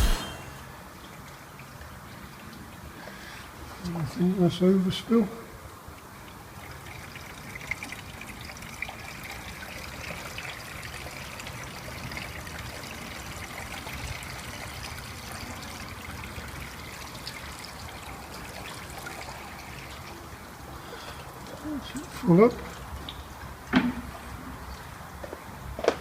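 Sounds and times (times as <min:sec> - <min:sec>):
water pouring into reservoir: 0:06.0 - 0:25.1.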